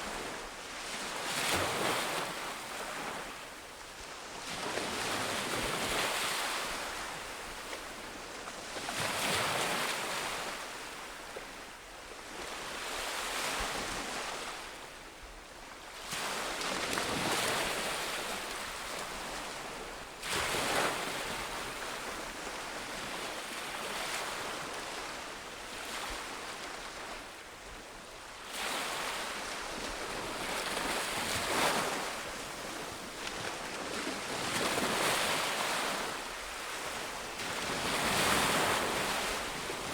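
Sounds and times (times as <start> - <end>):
waves breaking on a beach: 0.0 - 39.9.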